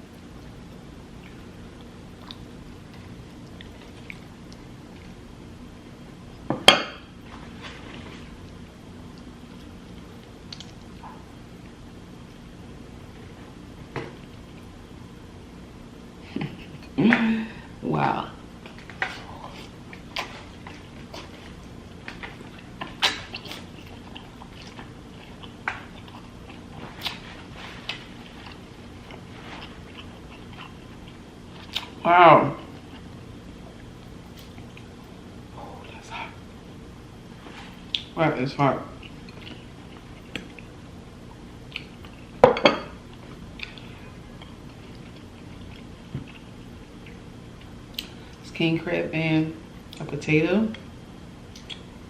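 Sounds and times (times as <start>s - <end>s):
person chewing with mouth clicks: 1.2s - 5.2s, 18.6s - 32.0s, 32.7s - 35.0s, 38.9s - 42.4s, 43.1s - 48.4s, 51.5s - 51.9s.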